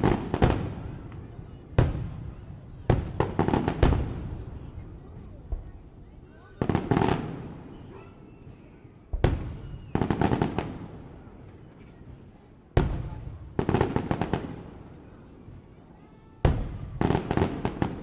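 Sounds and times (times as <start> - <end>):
fireworks crackling: 0.0 - 5.8.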